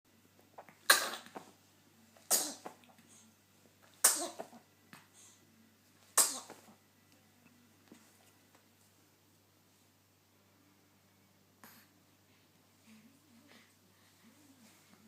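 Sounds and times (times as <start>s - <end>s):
person sneezing: 0.8s - 1.4s, 2.3s - 2.8s, 4.0s - 4.6s, 6.2s - 6.7s.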